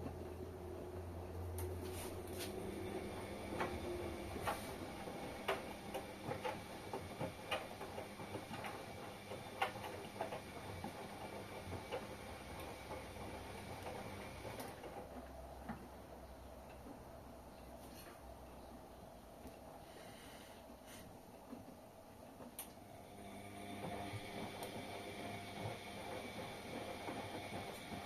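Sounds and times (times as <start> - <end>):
washing machine running hum: 0.0 - 28.0.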